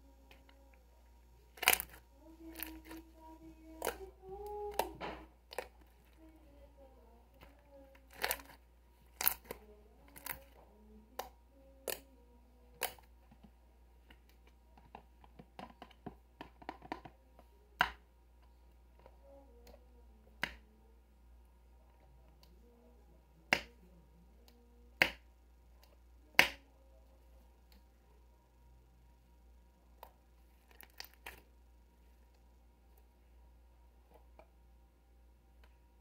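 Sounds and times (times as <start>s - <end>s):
object clicking and tapping: 14.2s - 17.2s.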